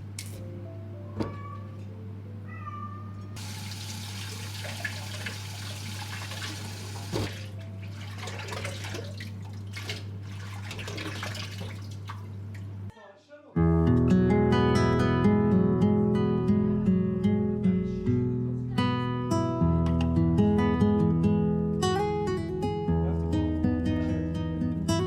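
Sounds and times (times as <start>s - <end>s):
tap water running into sink: 3.4s - 12.3s.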